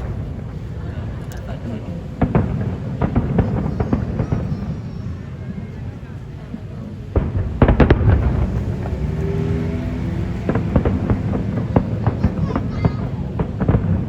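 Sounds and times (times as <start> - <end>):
constant low rumble: 0.0 - 14.0
fireworks bangs and crackles: 0.0 - 14.0.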